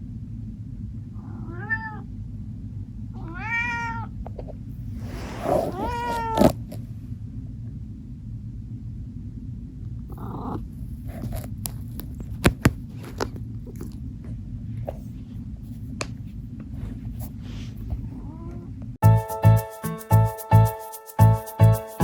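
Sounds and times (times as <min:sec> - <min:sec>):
cat purring: 0:03.0 - 0:07.0, 0:09.8 - 0:19.0.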